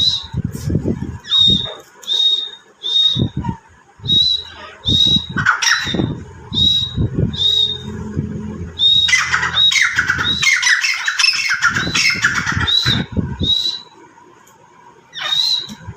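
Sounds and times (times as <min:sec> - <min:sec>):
birds squawking: 0:04.1 - 0:13.8, 0:15.1 - 0:15.8
low thuds: 0:06.1 - 0:10.4.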